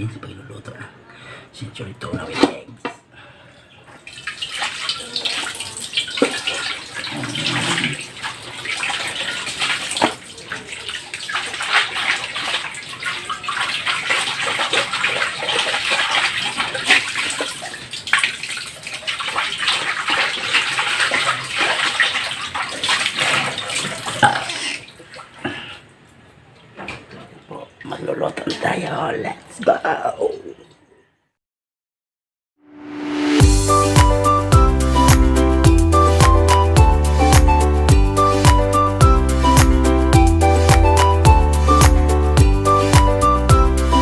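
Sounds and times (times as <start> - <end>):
tap water running: 3.9 - 24.2.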